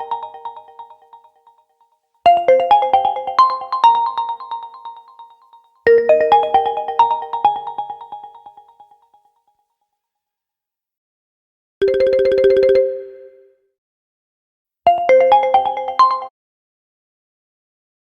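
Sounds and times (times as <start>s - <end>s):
phone ringtone melody: 11.8s - 13.4s.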